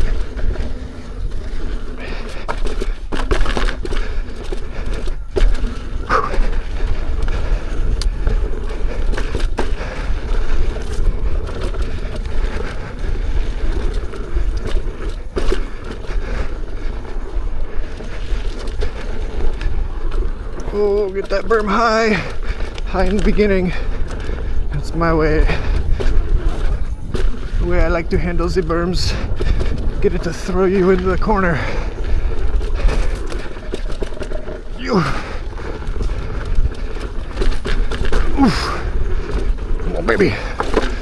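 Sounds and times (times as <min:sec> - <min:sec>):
electric unicycle rolling rumble: 0:00.0 - 0:41.0
knocks over bumps: 0:00.0 - 0:41.0.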